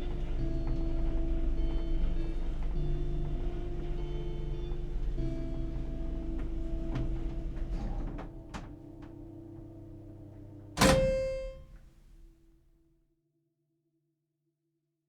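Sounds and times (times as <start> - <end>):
steady hum: 0.0 - 12.3
old door shutting thunk: 6.8 - 12.2.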